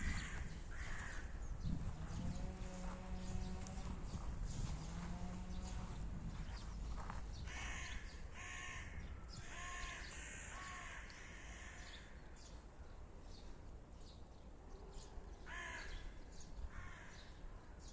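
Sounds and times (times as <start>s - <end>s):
crow cawing: 0.0s - 1.3s, 7.5s - 12.1s, 15.5s - 16.0s, 16.7s - 17.3s
low outdoor rumble: 0.0s - 9.3s.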